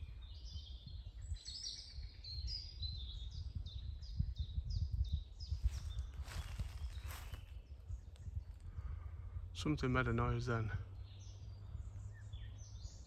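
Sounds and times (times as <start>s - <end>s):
wind on microphone: 0.0s - 9.5s.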